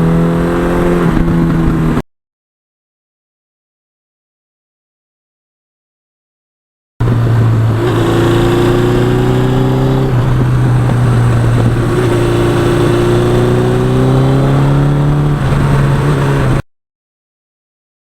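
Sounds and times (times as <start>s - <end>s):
motorcycle engine accelerating: 0.0s - 2.0s, 7.0s - 16.6s.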